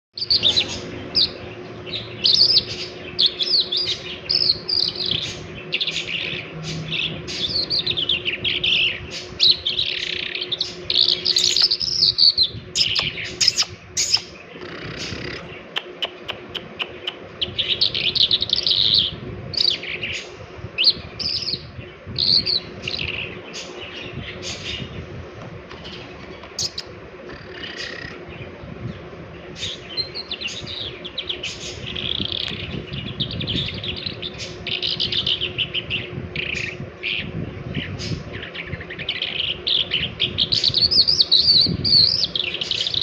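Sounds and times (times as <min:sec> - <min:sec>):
songbird warbling: 0:00.2 - 0:24.9, 0:25.9 - 0:28.3
faint steady hum: 0:00.2 - 0:43.0.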